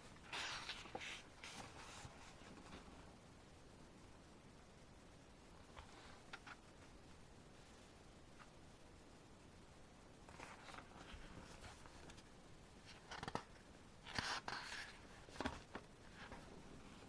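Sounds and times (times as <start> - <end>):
photo album pages turning: 0.2 - 2.8, 10.3 - 12.2, 12.9 - 16.5
paper rustling: 0.2 - 2.9, 10.3 - 12.3, 12.9 - 17.0.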